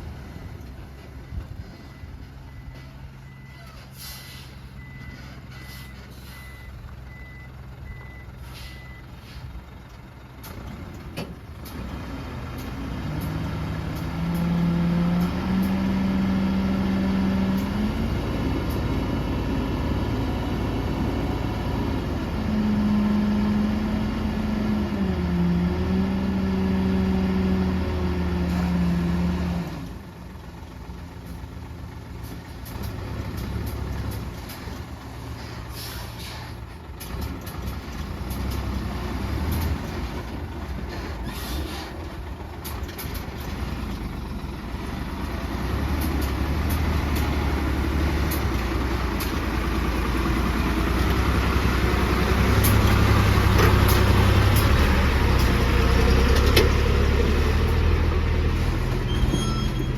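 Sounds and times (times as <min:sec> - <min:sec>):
diesel engine revving: 0:00.0 - 0:59.9
reversing alarm beeping: 0:01.2 - 0:03.7, 0:04.8 - 0:09.1, 0:59.1 - 0:59.9.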